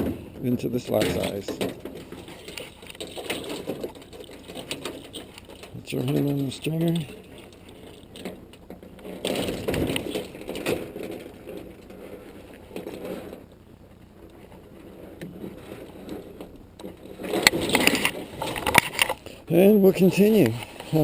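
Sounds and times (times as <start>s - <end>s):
scraping and knocking in a boat: 0.0s - 19.2s.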